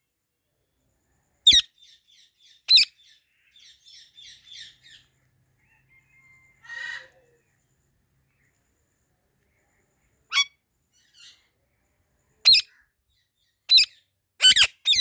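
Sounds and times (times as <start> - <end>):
parrot chirping: 1.5 - 1.7, 2.7 - 2.9, 10.3 - 10.5, 12.4 - 12.7, 13.7 - 15.0
parrot screeching: 12.5 - 12.7, 13.7 - 15.0.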